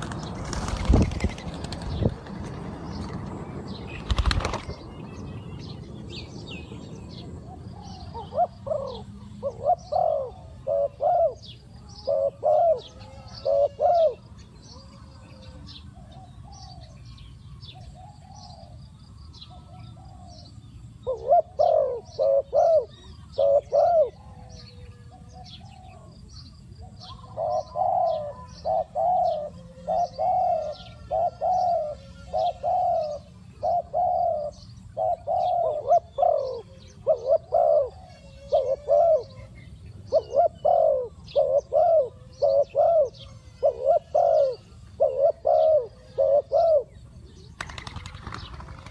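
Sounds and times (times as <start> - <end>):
small birds chirping: 0.0 - 48.9
dove cooing: 7.4 - 17.0, 19.5 - 26.2, 26.8 - 48.9.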